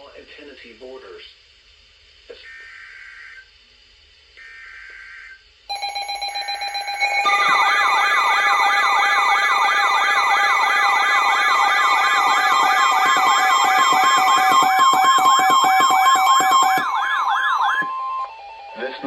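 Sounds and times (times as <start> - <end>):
steady alert tones: 5.7 - 18.0
siren yelping: 5.7 - 19.0.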